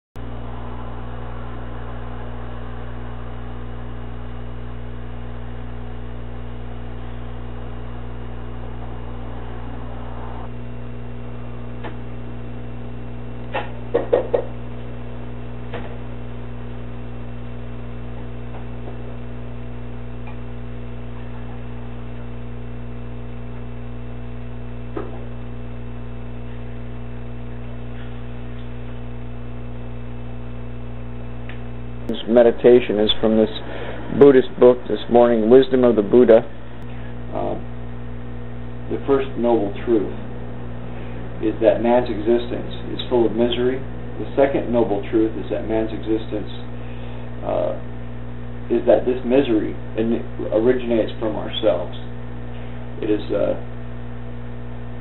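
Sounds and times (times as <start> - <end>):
electrical mains hum: 0.0 - 55.0
knocks: 13.6 - 14.5.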